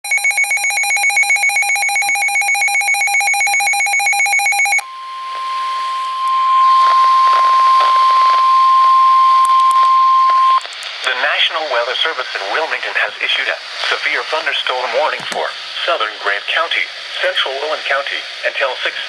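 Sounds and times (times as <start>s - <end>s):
steady high warning tone: 0.1s - 10.6s
weather radio alarm beeping: 0.1s - 10.6s
static hiss: 5.4s - 19.0s.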